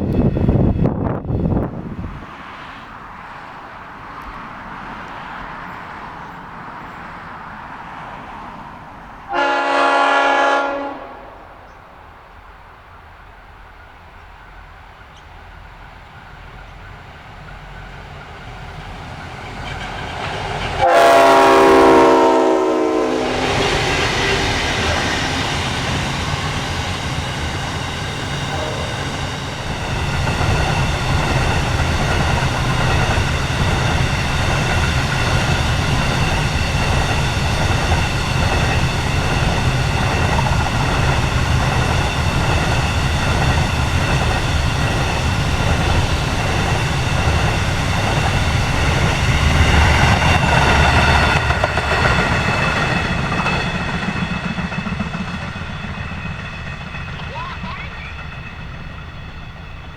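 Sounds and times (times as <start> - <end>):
diesel locomotive engines rumbling: 0.0 - 59.9
multi-note train horn blast: 9.3 - 11.6, 20.8 - 25.5, 28.4 - 29.4.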